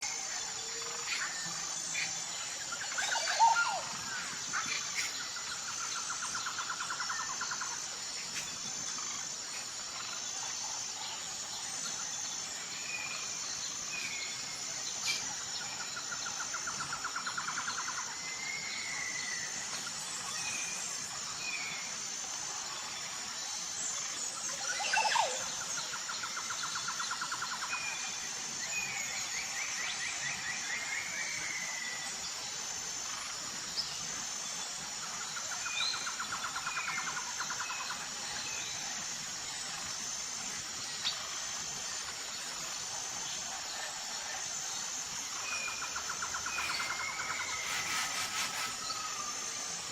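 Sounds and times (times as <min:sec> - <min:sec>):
high-pitched insect drone: 0:00.0 - 0:49.9.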